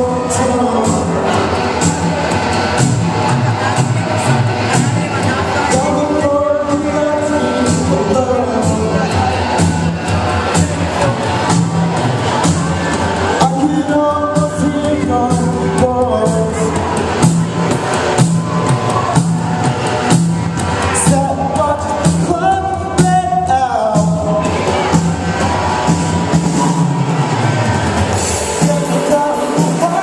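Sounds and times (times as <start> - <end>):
person singing: 0.0 - 19.2, 20.7 - 26.9, 28.2 - 30.0
band playing a song: 0.0 - 30.0.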